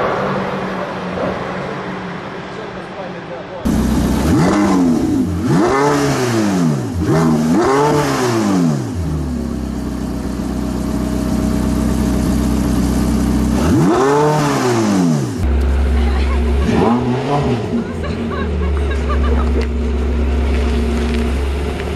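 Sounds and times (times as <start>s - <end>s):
car engine idling: 3.6s - 8.0s, 8.7s - 21.9s
car engine revving: 3.6s - 21.9s.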